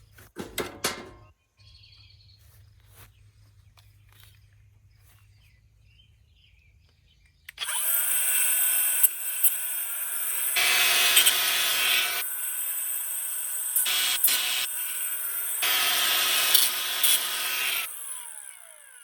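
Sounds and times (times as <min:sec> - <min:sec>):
clatter of knocks: 0:00.3 - 0:01.3
power tool motor whining: 0:07.5 - 0:19.0.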